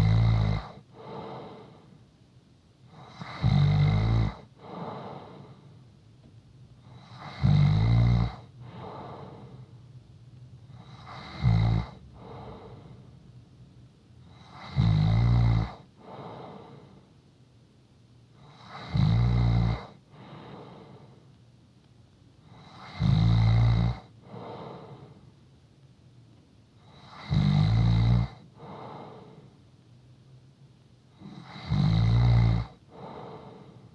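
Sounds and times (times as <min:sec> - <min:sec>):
person snoring: 0:00.0 - 0:01.8, 0:03.0 - 0:05.6, 0:07.0 - 0:09.6, 0:10.8 - 0:13.0, 0:14.3 - 0:17.0, 0:18.5 - 0:20.9, 0:22.5 - 0:25.1, 0:26.9 - 0:29.4, 0:31.2 - 0:33.8
soft breathing: 0:00.6 - 0:02.2, 0:04.4 - 0:06.0, 0:08.4 - 0:10.0, 0:11.9 - 0:13.4, 0:15.8 - 0:17.2, 0:19.9 - 0:21.4, 0:24.1 - 0:25.4, 0:28.4 - 0:29.8, 0:32.8 - 0:33.9.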